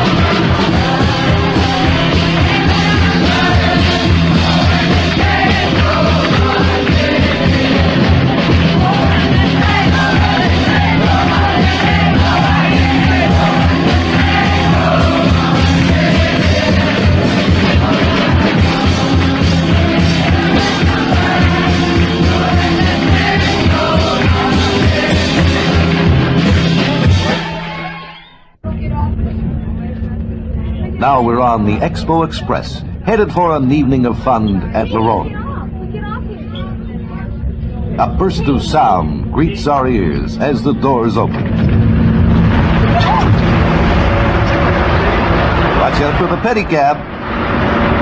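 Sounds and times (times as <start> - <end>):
group singing along: 0.0 - 28.4
lively rhythmic music: 0.0 - 28.6.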